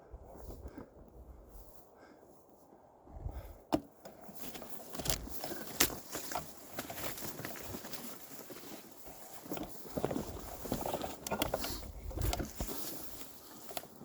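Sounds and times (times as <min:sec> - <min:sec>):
footsteps through undergrowth: 0:04.2 - 0:14.0
twigs snapping underfoot: 0:04.4 - 0:08.4.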